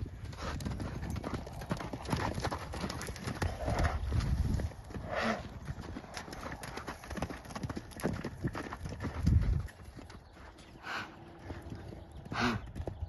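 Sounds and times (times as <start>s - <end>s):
horse hoofbeats: 0.0s - 13.0s.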